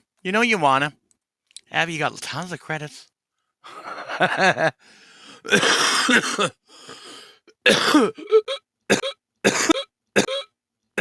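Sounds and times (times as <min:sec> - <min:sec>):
person coughing harshly: 0:05.5 - 0:06.6, 0:07.6 - 0:11.0.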